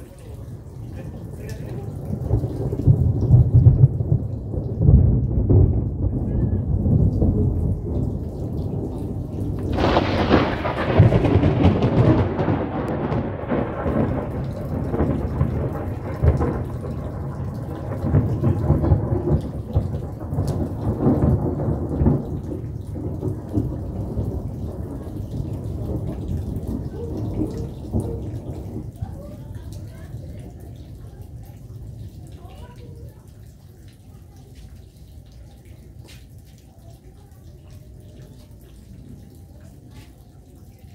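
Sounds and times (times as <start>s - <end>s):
rolling thunder rumble: 0.0s - 32.4s
heavy rain: 0.0s - 40.9s
thunderclap: 0.5s - 30.6s.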